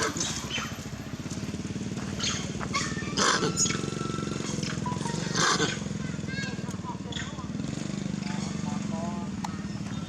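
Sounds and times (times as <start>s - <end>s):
small engine running: 0.0s - 10.0s
high animal cries: 2.2s - 5.9s.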